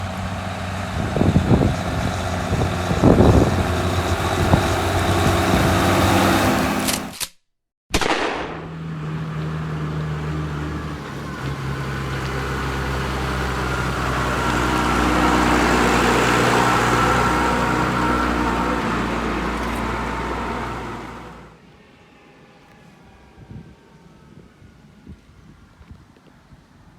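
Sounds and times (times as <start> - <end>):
tractor diesel engine running: 0.0 - 7.2, 8.2 - 21.6.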